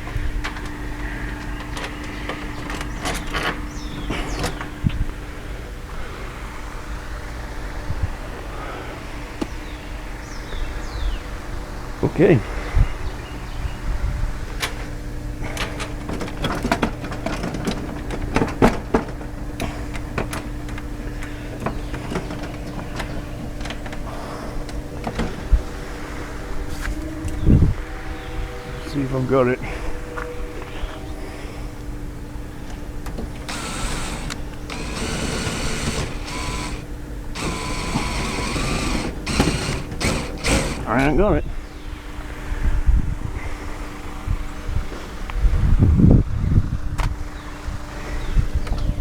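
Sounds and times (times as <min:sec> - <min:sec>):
steady low hum: 0:00.0 - 0:42.2
wooden parts clicking and knocking: 0:00.1 - 0:04.8, 0:15.5 - 0:25.5, 0:32.7 - 0:41.2
power drill whining: 0:33.1 - 0:41.2.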